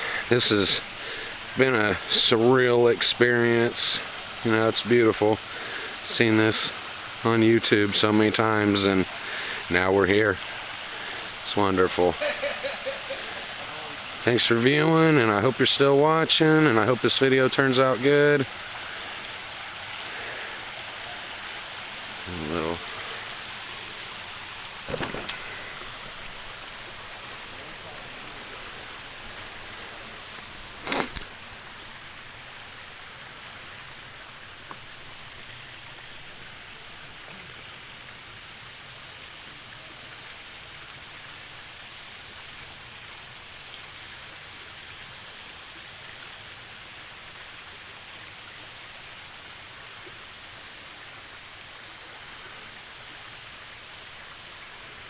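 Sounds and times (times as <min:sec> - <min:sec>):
river flowing: 0:00.0 - 0:55.0
short knock: 0:24.9 - 0:25.4.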